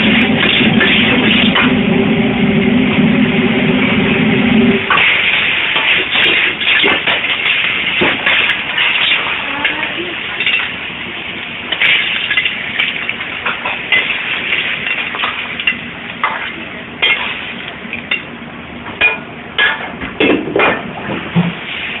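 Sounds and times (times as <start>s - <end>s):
clams sizzling in a wok: 4.9s - 16.4s.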